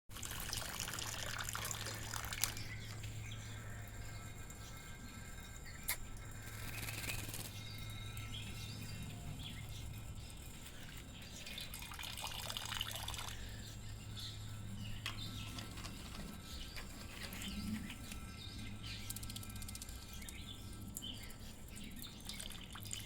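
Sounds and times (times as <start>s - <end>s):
water dripping and splashing: 0.1s - 3.2s, 10.7s - 13.4s, 21.9s - 23.0s
steady low hum: 0.1s - 23.0s.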